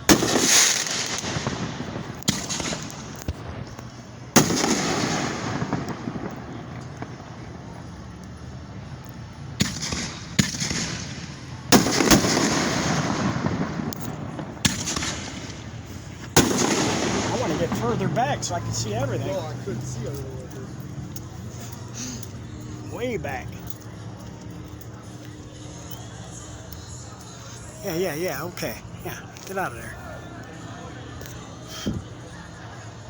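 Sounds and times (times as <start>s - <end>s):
fireworks bangs with echoing rumble: 0.0s - 7.9s, 9.6s - 18.2s.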